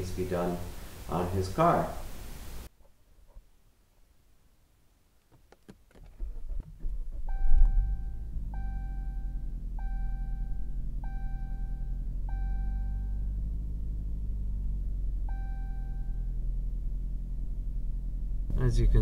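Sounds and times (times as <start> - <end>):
car engine starting and idling: 5.4 - 19.0
dashboard warning chime: 7.3 - 13.3, 15.2 - 16.4.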